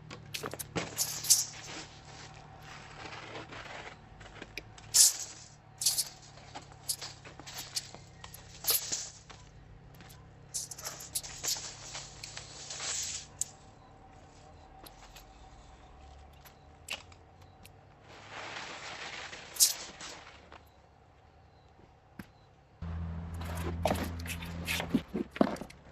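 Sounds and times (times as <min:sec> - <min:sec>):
tool scraping: 0:22.9 - 0:25.8.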